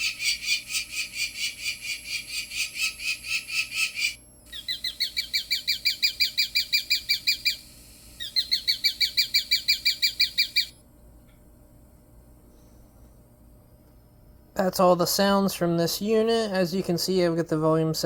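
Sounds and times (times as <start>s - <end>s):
electronic bird call chirps: 0.0s - 10.8s.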